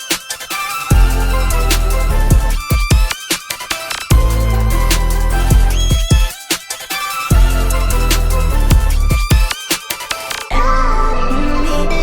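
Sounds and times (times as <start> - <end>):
electronic music with heavy bass: 0.0 - 12.0
deep kick drums: 0.9 - 3.1, 4.1 - 6.3, 7.3 - 9.5.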